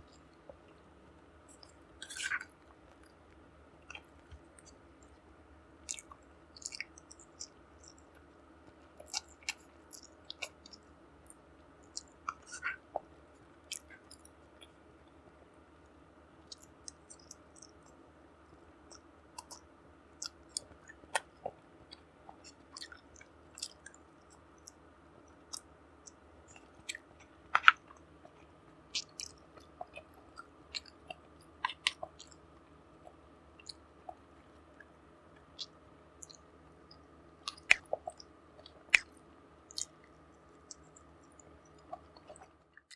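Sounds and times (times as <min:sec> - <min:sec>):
faint steady hum: 0:00.0 - 0:42.9
person chewing food: 0:01.5 - 0:05.2, 0:05.9 - 0:14.8, 0:16.5 - 0:18.0, 0:18.9 - 0:24.8, 0:25.4 - 0:42.9
mouth clicks and smacks: 0:05.9 - 0:08.2, 0:09.0 - 0:13.1, 0:16.5 - 0:18.0, 0:18.9 - 0:24.8, 0:25.4 - 0:42.9.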